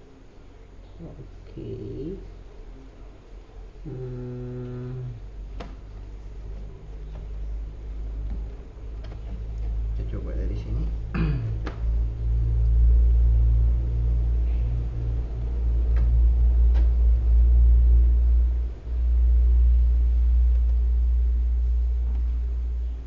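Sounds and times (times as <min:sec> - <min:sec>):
low rumble: 0:06.3 - 0:23.0.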